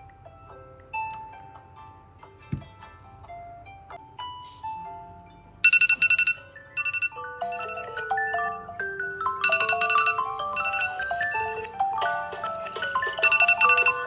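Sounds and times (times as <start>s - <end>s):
marimba-like ringtone: 5.6s - 14.0s.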